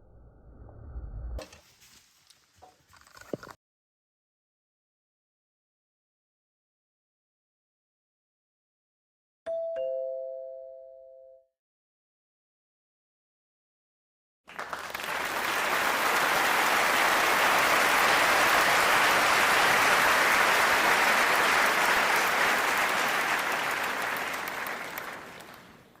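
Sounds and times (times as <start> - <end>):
applause: 14.5 - 26.0.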